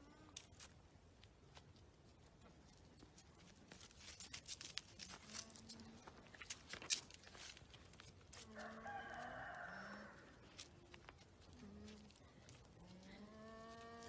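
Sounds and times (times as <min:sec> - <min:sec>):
crackling and crunching clicks: 0:02.7 - 0:08.5.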